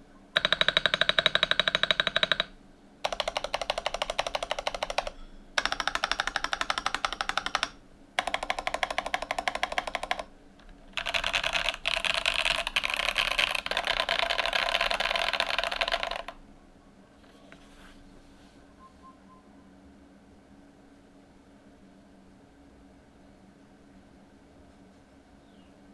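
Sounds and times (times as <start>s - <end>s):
mechanical keyboard key clicks: 3.1s - 16.4s.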